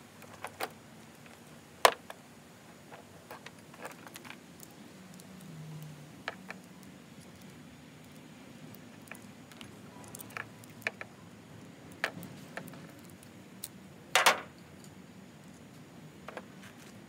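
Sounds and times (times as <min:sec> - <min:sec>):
light metallic clicks and clinks: 0:03.3 - 0:11.1, 0:11.9 - 0:16.4.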